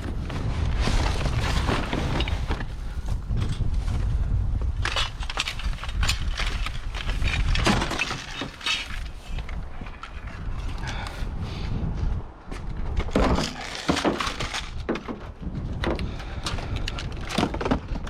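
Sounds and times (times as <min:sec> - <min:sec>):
scrap metal clicking and cracking: 0:04.8 - 0:10.5, 0:13.0 - 0:15.2.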